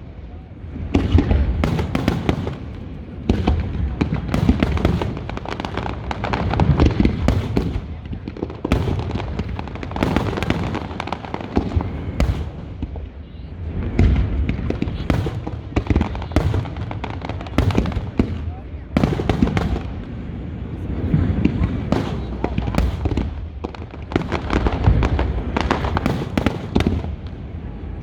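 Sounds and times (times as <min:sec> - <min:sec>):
fireworks booming and crackling: 0:00.0 - 0:28.0
low rumble and echo: 0:00.0 - 0:28.0.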